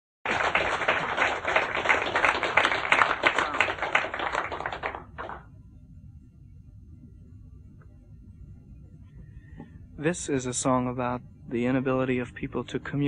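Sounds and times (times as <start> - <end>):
audience applauding: 0.3 - 5.4.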